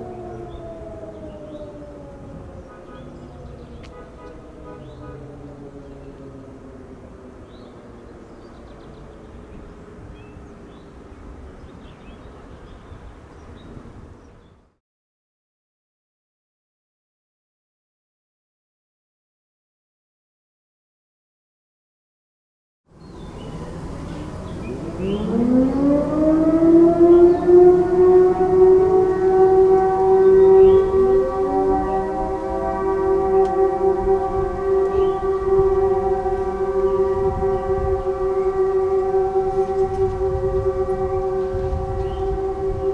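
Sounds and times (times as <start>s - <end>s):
distant siren: 0.0s - 13.7s, 22.9s - 42.9s
birds chirping: 0.0s - 14.7s, 23.0s - 42.9s.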